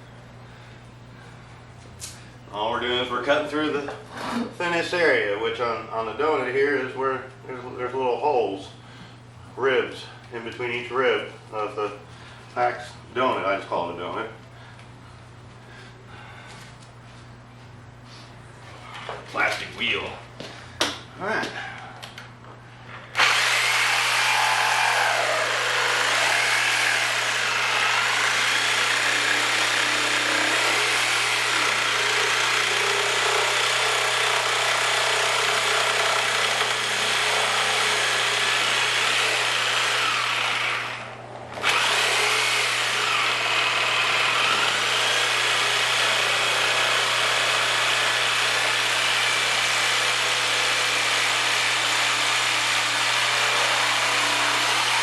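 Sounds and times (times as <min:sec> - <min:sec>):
power cutting tool cutting plastic: 0:23.1 - 0:55.0.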